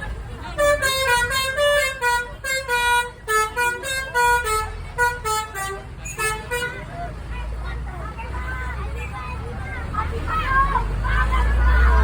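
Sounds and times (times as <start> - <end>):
multi-tone bus horn tune: 0.1 - 7.1.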